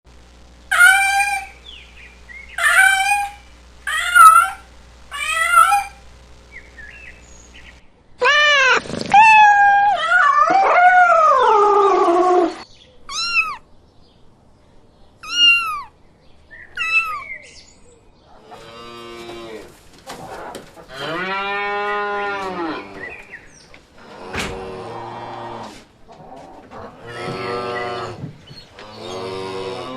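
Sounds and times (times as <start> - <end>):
animal calls: 0.7 - 6.0, 6.7 - 13.6, 15.2 - 15.9, 16.7 - 17.4.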